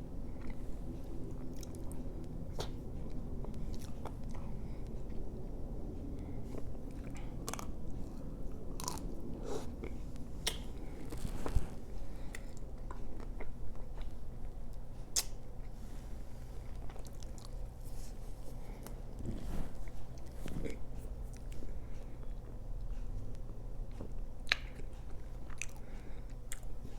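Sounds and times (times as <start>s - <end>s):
faint low hum: 0.0s - 26.9s
chewing mouth sounds: 0.3s - 5.6s, 6.2s - 15.4s, 24.4s - 26.9s.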